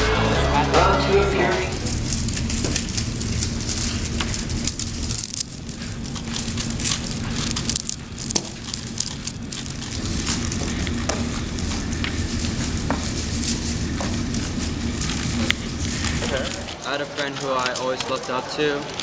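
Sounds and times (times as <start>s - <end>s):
low hum: 0.0s - 5.5s
plastic puzzle cubes clicking: 4.2s - 11.0s.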